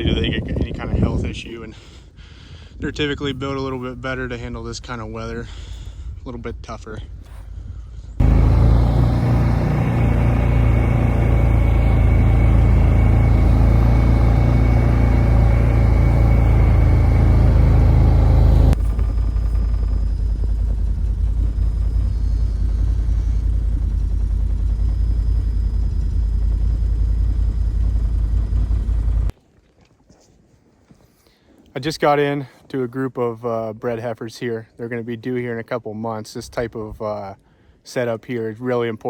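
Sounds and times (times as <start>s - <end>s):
vehicle engine rumbling: 0.0s - 29.3s.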